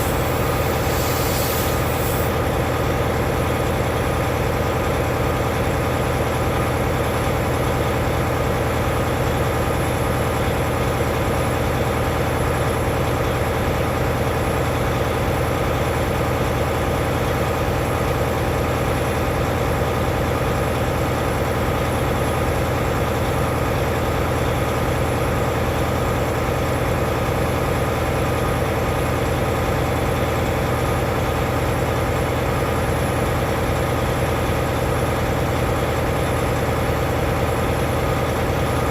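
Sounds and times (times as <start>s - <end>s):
truck diesel engine idling: 0.0s - 38.9s.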